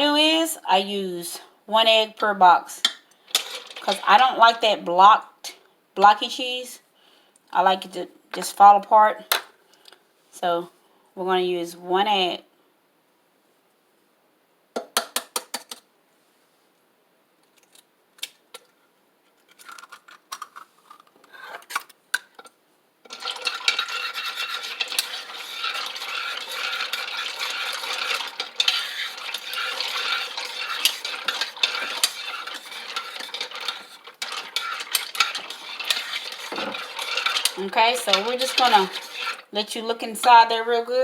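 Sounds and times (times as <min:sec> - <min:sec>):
utensil stirring in a bowl: 0:03.3 - 0:04.4, 0:23.1 - 0:40.6.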